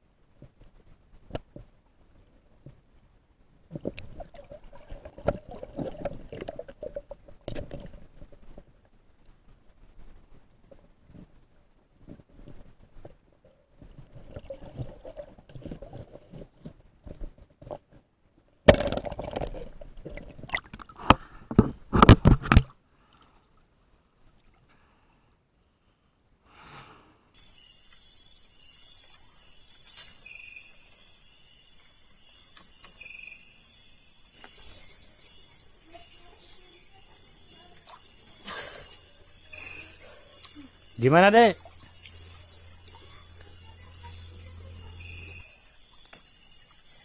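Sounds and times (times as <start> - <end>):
water splashing and sloshing: 3.7 - 8.8, 12.9 - 18.0
crickets and night insects: 20.4 - 47.0.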